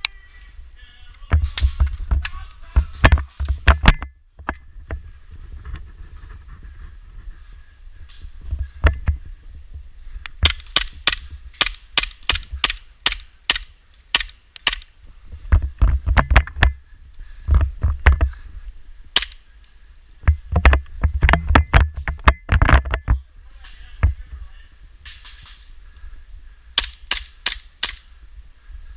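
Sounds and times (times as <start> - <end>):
dull low thuds: 15.1 - 18.6, 20.2 - 23.3.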